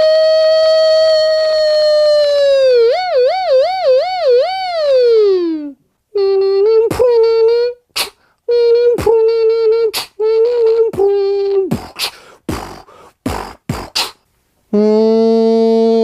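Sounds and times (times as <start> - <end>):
held vocal tone: 4.5 - 16.0
beatbox mouth pops: 6.9 - 14.3
beatbox clicks and snaps: 7.9 - 8.2, 9.9 - 10.2, 11.7 - 14.3.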